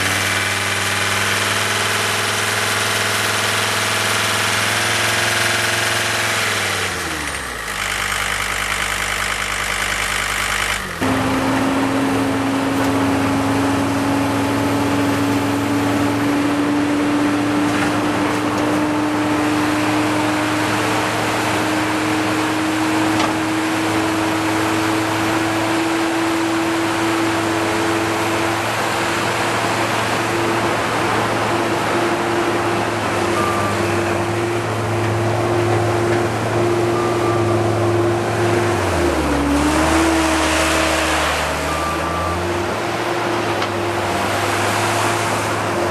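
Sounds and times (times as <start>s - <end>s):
diesel engine running: 0.0s - 45.9s.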